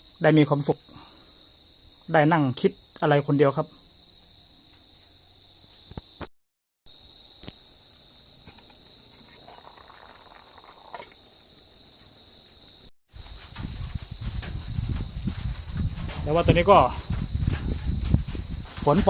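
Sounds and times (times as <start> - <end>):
crickets trilling: 0.0 - 6.3, 6.9 - 19.0.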